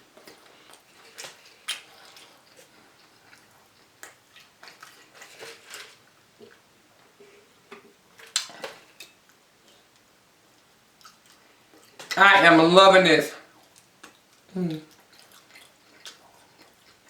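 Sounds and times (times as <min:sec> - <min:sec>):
wet mouth clicks and lip smacks: 0:00.7 - 0:05.0, 0:07.7 - 0:09.1.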